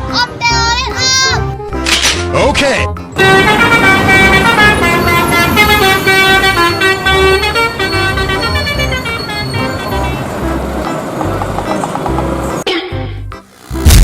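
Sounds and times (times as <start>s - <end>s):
musical air horn melody: 3.2s - 10.6s.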